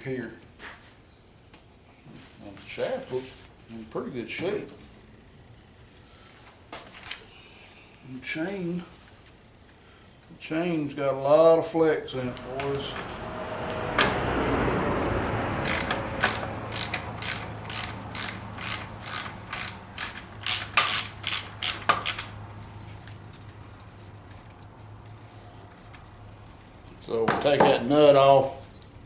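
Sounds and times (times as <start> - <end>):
metal scraping rumble: 12.2 - 19.5
sharp metallic clicks: 15.6 - 25.2.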